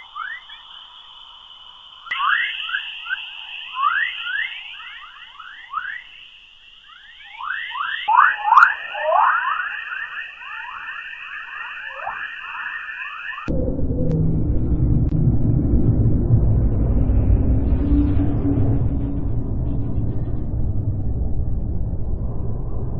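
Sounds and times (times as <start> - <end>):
steady high hiss: 0.0 - 13.5
whistling chirps falling in pitch: 0.0 - 13.5.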